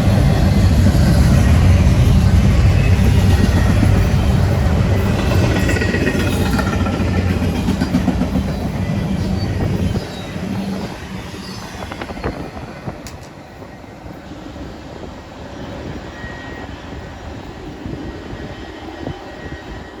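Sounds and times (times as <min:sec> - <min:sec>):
train wheels clattering over rails: 0:00.0 - 0:13.7.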